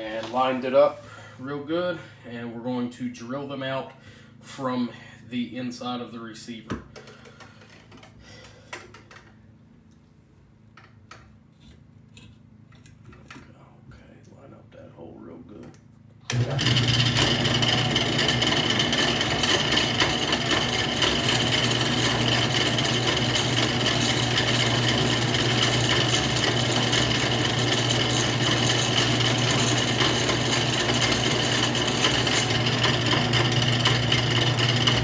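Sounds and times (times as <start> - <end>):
drill press running: 16.3 - 35.0.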